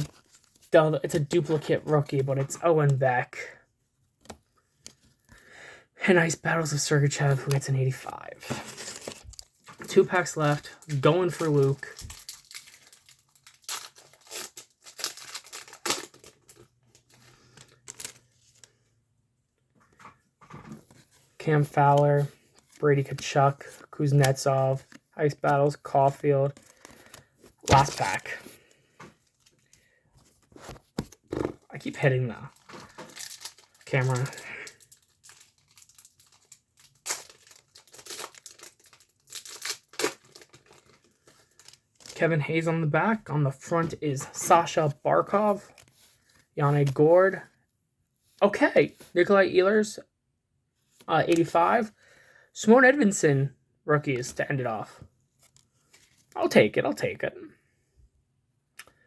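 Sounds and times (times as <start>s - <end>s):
wrapper tearing and crinkling: 8.4s - 18.4s, 32.5s - 42.2s.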